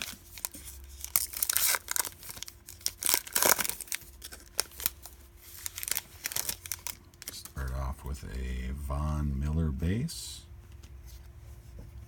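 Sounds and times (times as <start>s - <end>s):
wrapper tearing and crinkling: 0.0s - 7.7s.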